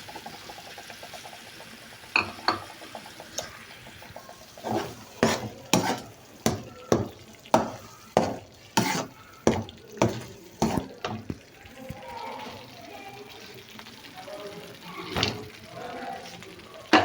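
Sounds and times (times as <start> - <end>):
faint sizzle: 0.0 - 17.0
spoon scraping a pot: 2.2 - 11.4.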